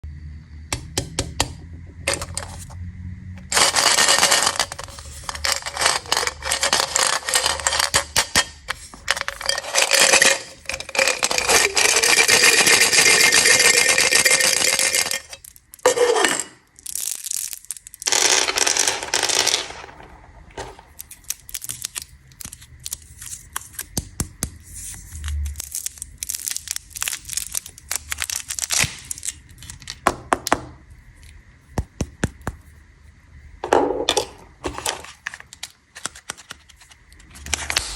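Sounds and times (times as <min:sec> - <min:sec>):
hard candies clicking: 0:03.4 - 0:15.9, 0:16.6 - 0:32.7
candy packaging crinkling: 0:03.4 - 0:30.1, 0:34.2 - 0:37.9.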